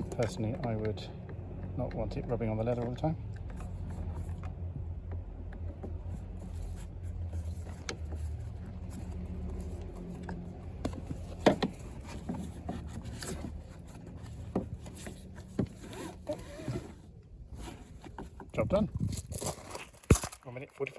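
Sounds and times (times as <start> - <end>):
seatbelt clicks and knocks: 0.0 - 6.4, 7.8 - 13.5.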